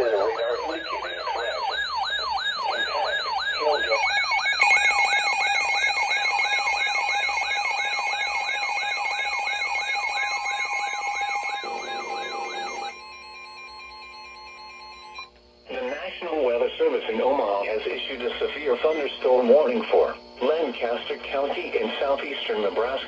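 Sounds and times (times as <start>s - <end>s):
steady electronic tone: 0.0s - 16.4s.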